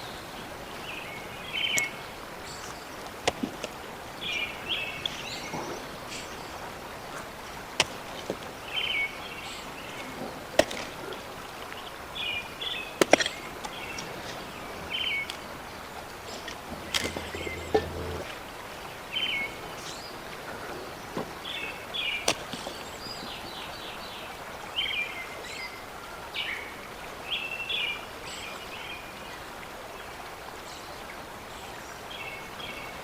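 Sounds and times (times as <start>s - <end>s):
birds chirping: 0.0s - 24.1s
sharp knocks or snaps: 16.3s - 18.3s.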